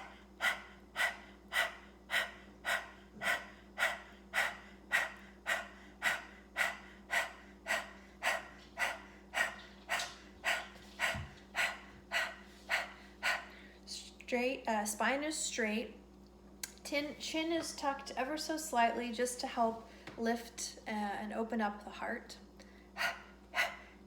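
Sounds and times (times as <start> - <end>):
rapid rhythmic panting breaths: 0.0 - 13.8, 22.8 - 24.0.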